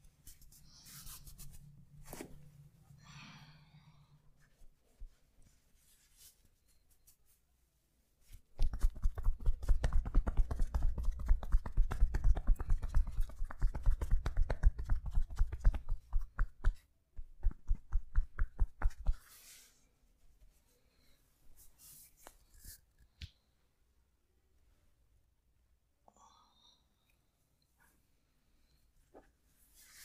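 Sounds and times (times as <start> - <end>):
hands tapping on body: 8.5 - 19.2.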